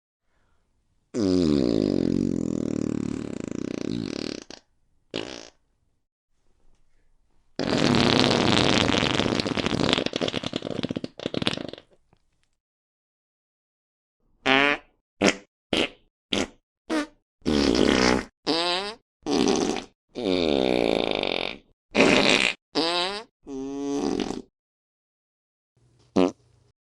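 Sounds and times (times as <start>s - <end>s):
farting: 1.1s - 5.6s, 7.6s - 12.0s, 14.4s - 24.5s, 26.2s - 26.4s
rapid sputtering fart: 1.2s - 5.6s, 7.6s - 12.0s, 14.4s - 24.5s, 26.2s - 26.4s.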